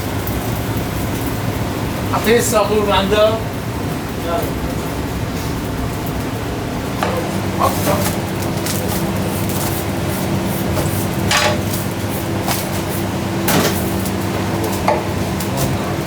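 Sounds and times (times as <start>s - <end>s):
kitchen equipment hum: 0.0s - 16.0s
utensils and dishes clinking: 7.0s - 16.0s.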